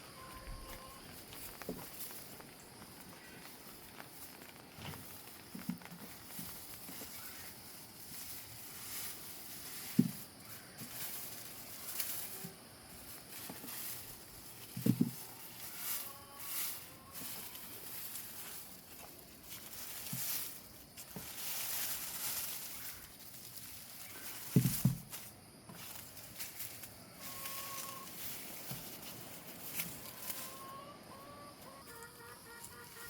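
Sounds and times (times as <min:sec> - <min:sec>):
chickens clucking: 0:00.0 - 0:01.8, 0:10.5 - 0:20.5, 0:26.8 - 0:33.0
rustling and scraping in soil: 0:00.0 - 0:33.0.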